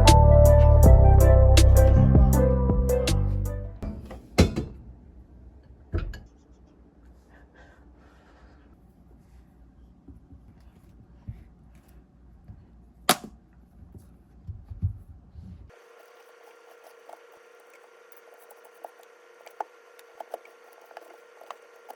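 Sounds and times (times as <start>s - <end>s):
faint handling sounds: 8.2s - 21.9s.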